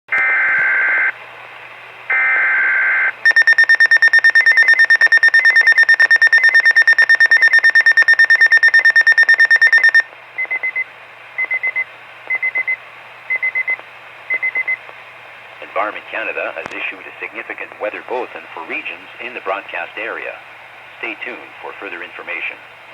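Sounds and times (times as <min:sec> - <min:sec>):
buzzing data bursts: 0:02.1 - 0:10.0
short beeps: 0:03.3 - 0:10.8.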